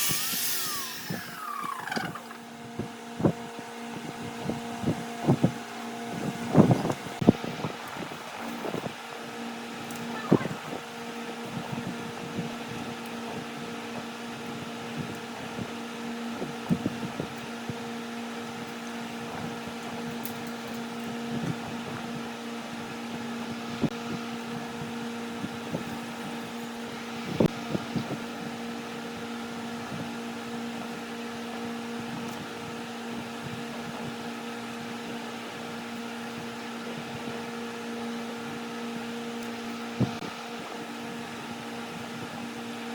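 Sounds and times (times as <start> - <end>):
wood lathe motor hum: 0.0 - 2.7.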